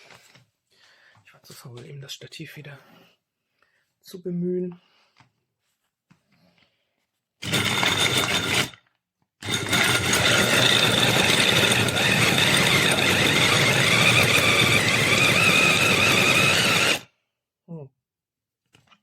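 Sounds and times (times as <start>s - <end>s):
food chopper motor whine: 7.4s - 8.8s, 9.4s - 17.1s.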